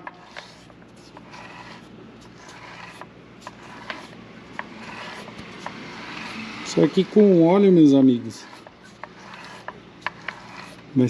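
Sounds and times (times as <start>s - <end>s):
gears grinding: 2.4s - 10.8s.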